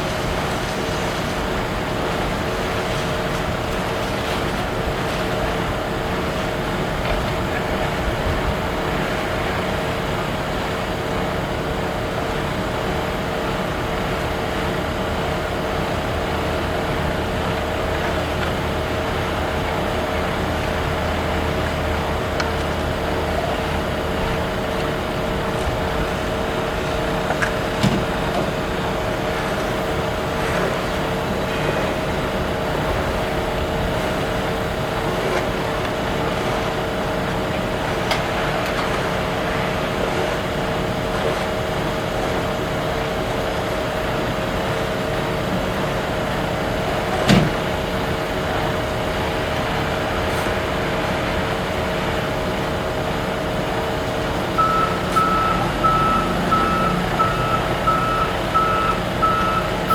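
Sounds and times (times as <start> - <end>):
engine running steadily: 0.0 - 59.9.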